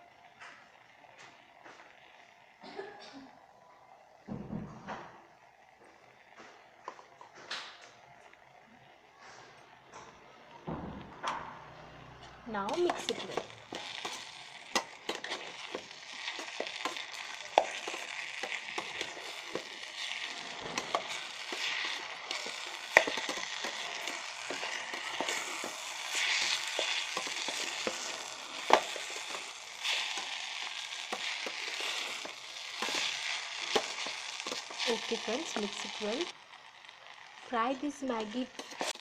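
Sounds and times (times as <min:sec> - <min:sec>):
noodles sizzling: 0:00.0 - 0:39.0
stirring clicks and scrapes: 0:12.6 - 0:39.0.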